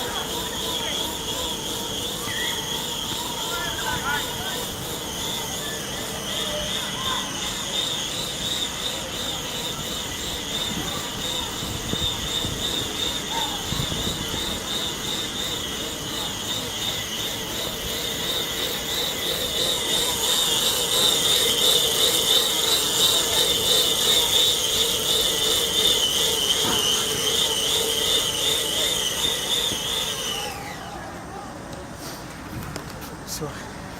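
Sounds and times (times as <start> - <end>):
bicycle tyre whining on rollers: 0.0 - 33.0.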